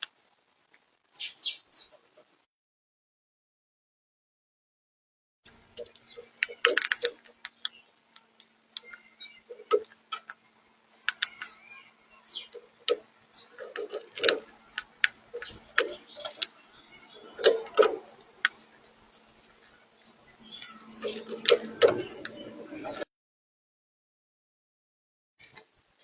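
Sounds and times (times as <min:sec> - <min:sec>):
soft bird chirps: 0:01.1 - 0:02.0, 0:05.5 - 0:23.0.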